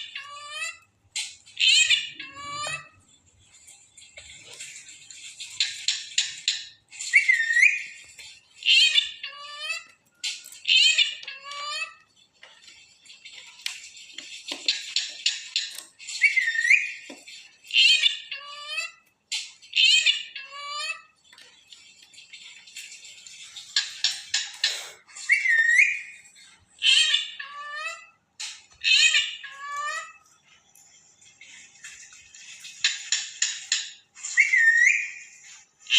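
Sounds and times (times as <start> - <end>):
parrot chattering and whistling: 0.0 - 3.0, 5.1 - 12.1, 14.7 - 17.1, 17.7 - 21.2, 23.7 - 26.2, 26.8 - 30.2, 32.8 - 35.9.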